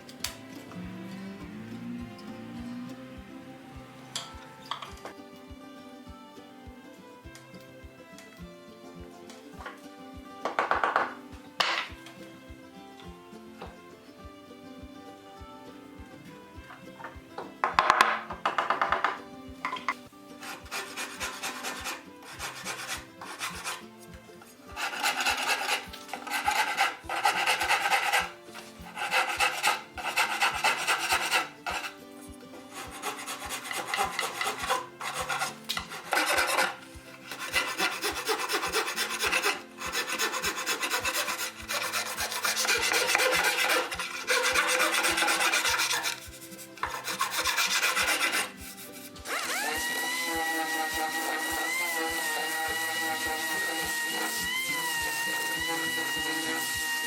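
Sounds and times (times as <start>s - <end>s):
wood rasp filing wood: 20.4s - 23.9s, 24.6s - 32.0s, 32.6s - 57.0s.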